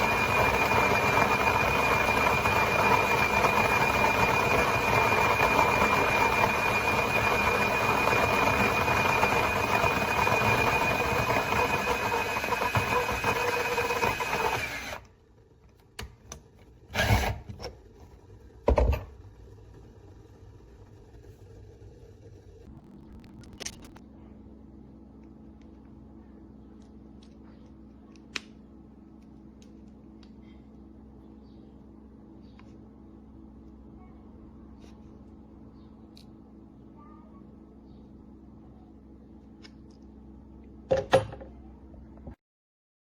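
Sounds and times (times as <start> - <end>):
small motor whining: 0.0 - 15.1.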